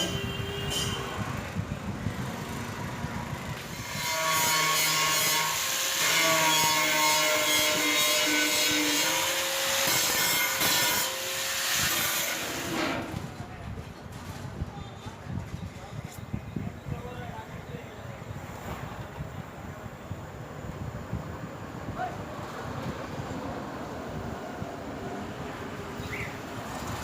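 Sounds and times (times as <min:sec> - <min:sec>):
harsh scraping: 0:03.6 - 0:14.8.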